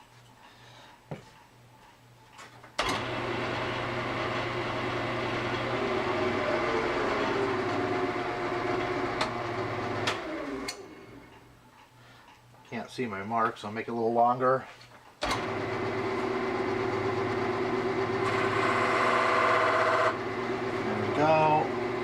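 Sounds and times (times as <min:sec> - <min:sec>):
lathe motor humming: 0:02.8 - 0:11.4, 0:15.4 - 0:22.0
gouge cutting spinning wood: 0:03.0 - 0:10.1, 0:15.4 - 0:22.0.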